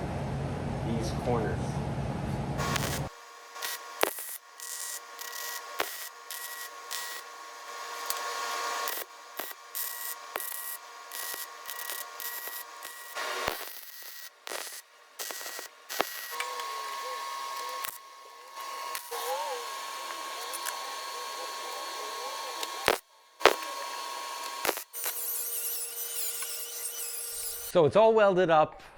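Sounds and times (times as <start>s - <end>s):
welder crackling: 2.6s - 27.8s
sharp clicks: 22.6s - 25.2s.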